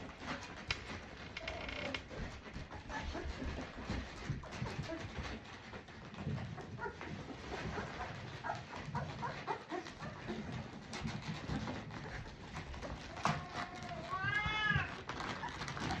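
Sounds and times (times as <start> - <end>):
puppy whining: 2.1 - 16.0
puppies squeaking and whimpering: 14.4 - 16.0.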